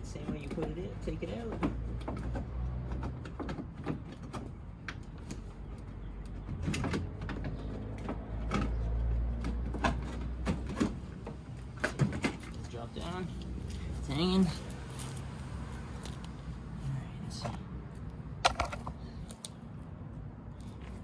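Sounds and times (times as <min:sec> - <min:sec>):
clicks knocks and scrapes of plastic: 0:00.2 - 0:12.8, 0:18.4 - 0:19.5.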